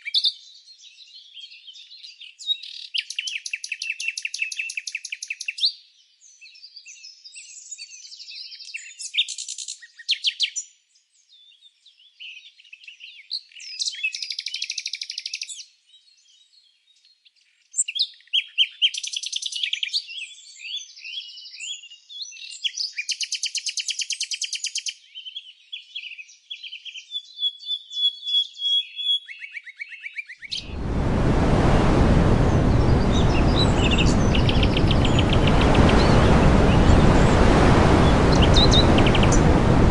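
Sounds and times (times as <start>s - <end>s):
songbirds chirping and trilling: 0.0s - 30.8s, 32.6s - 39.5s
loud steady rushing noise: 30.6s - 39.9s.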